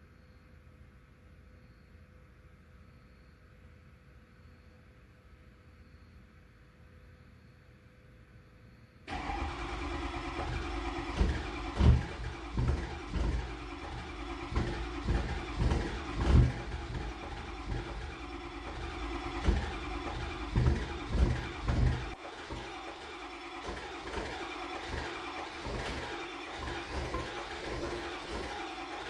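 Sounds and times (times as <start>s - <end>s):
diesel engine running rough: 9.1s - 29.0s
heavy engine thumps: 9.1s - 29.0s.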